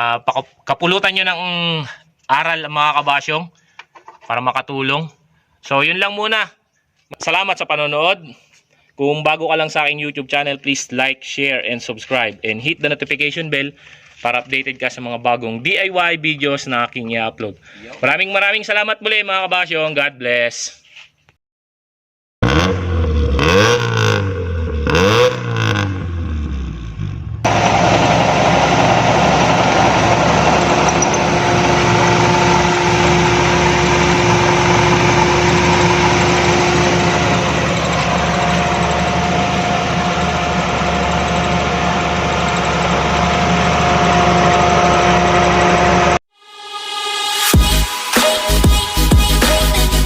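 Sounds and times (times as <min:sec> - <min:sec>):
car engine revving: 0:22.4 - 0:46.2
car engine running steadily: 0:26.1 - 0:46.2.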